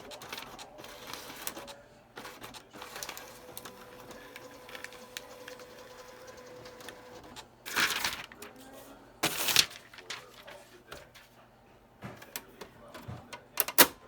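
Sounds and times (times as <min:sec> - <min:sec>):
typewriter clicking: 0:00.0 - 0:08.5, 0:13.6 - 0:14.0.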